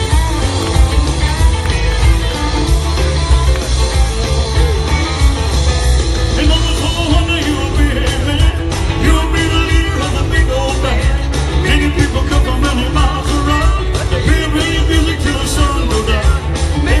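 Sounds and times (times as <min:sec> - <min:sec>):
electric guitar rock music: 0:00.0 - 0:17.0
person singing: 0:06.3 - 0:17.0.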